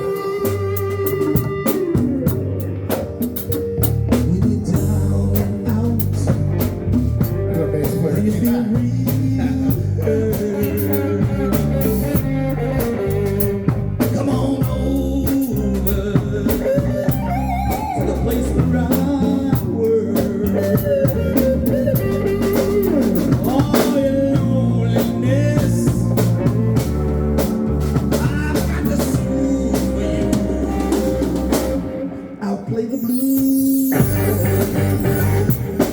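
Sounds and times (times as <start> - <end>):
blues electric guitar: 0.0 - 35.9
drum kit beat: 0.0 - 35.9.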